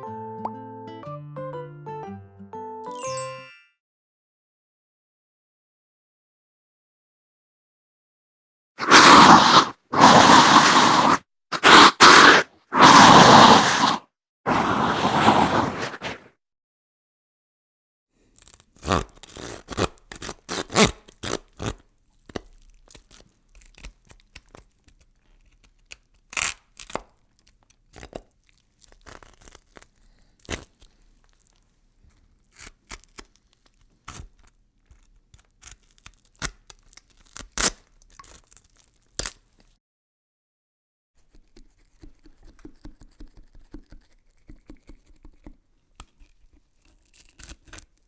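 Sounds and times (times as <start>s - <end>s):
sharp cracks and crunches: 18.3s - 39.8s, 46.0s - 48.0s.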